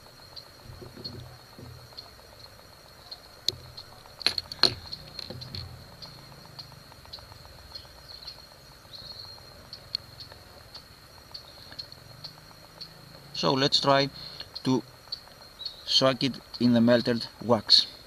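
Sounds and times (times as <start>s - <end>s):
faint high-pitched whine: 0.0s - 18.0s
handling clicks and taps: 3.4s - 7.2s.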